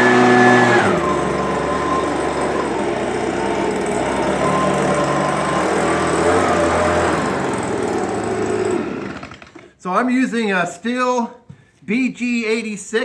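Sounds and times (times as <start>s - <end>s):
leaf blower engine running: 0.0s - 9.8s.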